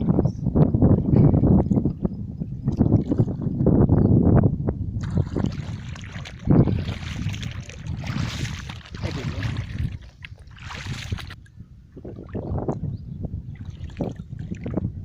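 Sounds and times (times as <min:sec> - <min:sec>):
wind rumbling on microphone: 0:00.0 - 0:15.0
water splashing and trickling: 0:01.3 - 0:03.7, 0:05.0 - 0:12.9, 0:13.5 - 0:15.0.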